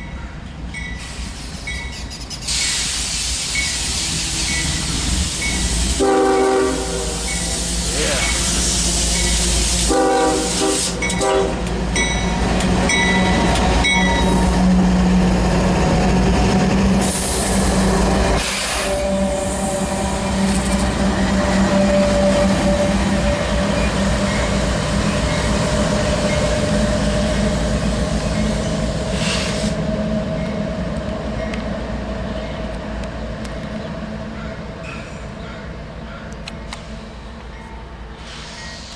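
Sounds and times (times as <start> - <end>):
diesel locomotive drone: 0.0 - 38.9
locomotive horn chord: 6.0 - 7.3, 9.8 - 11.8, 18.7 - 20.3.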